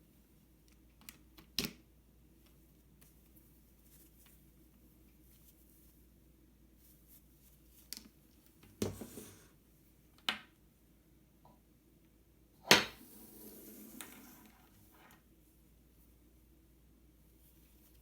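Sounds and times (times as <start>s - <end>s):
soft rustling: 2.7s - 10.0s, 17.2s - 18.0s.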